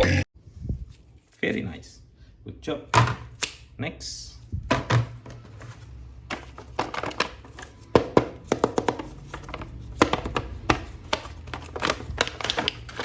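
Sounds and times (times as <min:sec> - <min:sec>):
plastic toy packaging clicks: 0:08.4 - 0:13.0.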